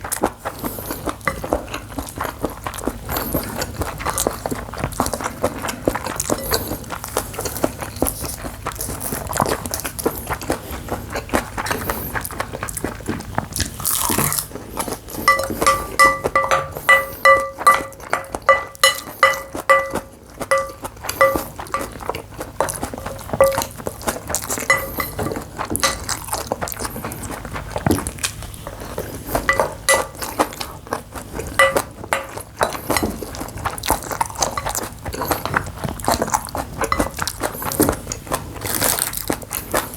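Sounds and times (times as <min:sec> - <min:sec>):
chewing and crunching: 0:00.0 - 0:39.9
spoon clinking against bowl: 0:15.2 - 0:22.0, 0:23.0 - 0:23.8, 0:24.6 - 0:26.1, 0:29.4 - 0:30.3, 0:31.6 - 0:33.1, 0:36.9 - 0:37.2.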